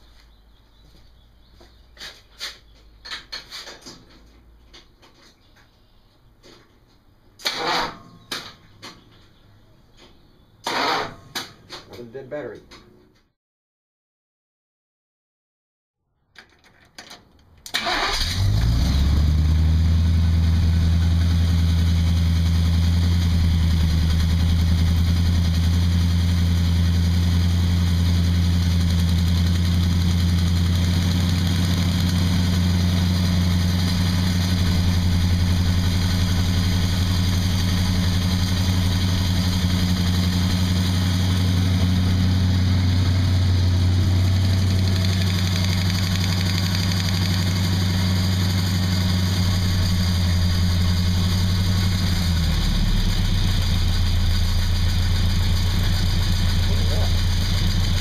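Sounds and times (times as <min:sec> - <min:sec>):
car engine starting and idling: 0:17.6 - 0:58.0.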